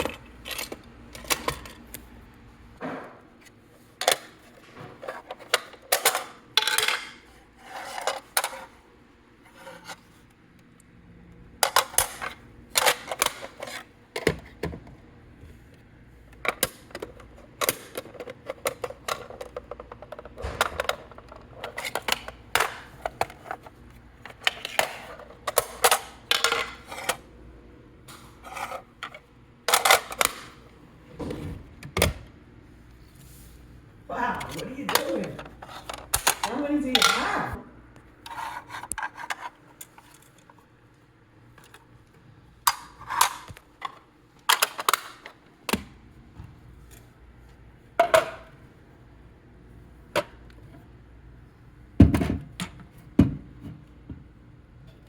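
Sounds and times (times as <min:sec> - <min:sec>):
hard objects clicking and knocking: 0:16.4 - 0:27.2.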